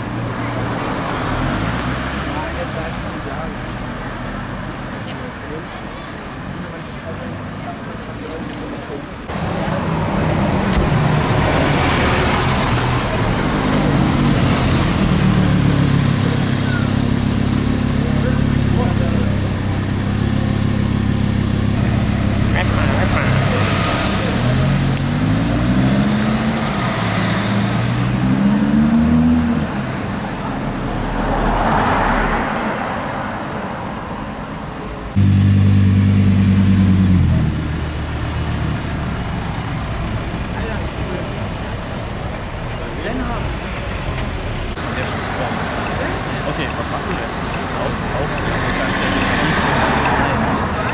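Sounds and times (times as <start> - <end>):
street noise: 0.0 - 50.9
car engine running: 9.3 - 25.5, 35.2 - 44.8.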